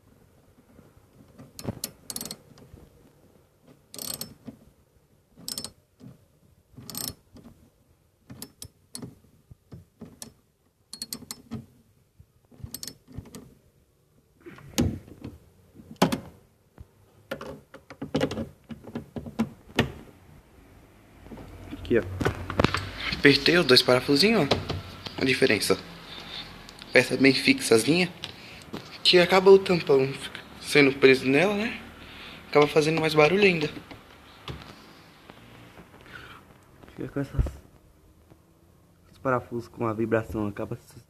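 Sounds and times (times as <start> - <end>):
socket ratchet clicking: 1.5 - 2.5, 3.9 - 4.4, 5.4 - 5.8, 6.8 - 7.2, 10.2 - 11.5, 12.7 - 13.4.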